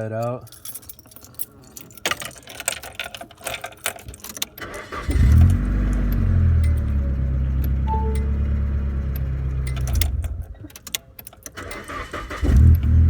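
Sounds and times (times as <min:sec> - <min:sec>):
keys jangling: 0:00.1 - 0:07.1, 0:09.6 - 0:11.9
car engine starting and idling: 0:04.6 - 0:10.6, 0:11.5 - 0:13.0.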